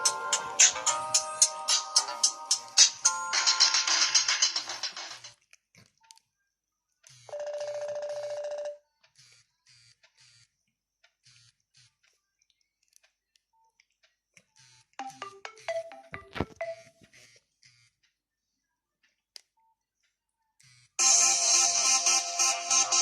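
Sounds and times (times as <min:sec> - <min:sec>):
electronic ringtone melody: 0:00.0 - 0:04.5, 0:07.3 - 0:08.8, 0:15.0 - 0:17.2, 0:21.0 - 0:23.0.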